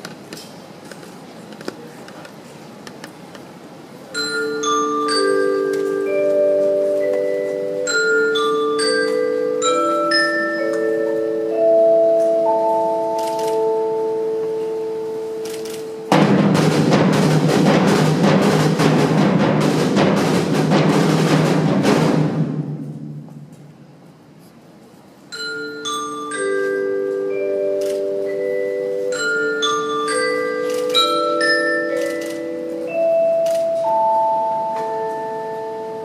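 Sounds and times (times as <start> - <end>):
marimba and glockenspiel melody: 4.1 - 21.3, 25.3 - 36.0
dense percussion roll: 16.1 - 24.1.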